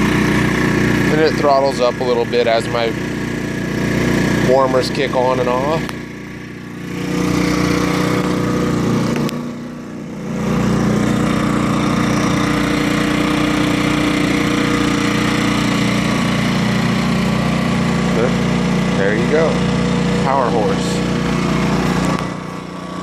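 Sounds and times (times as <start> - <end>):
generator engine running: 0.0 - 23.0.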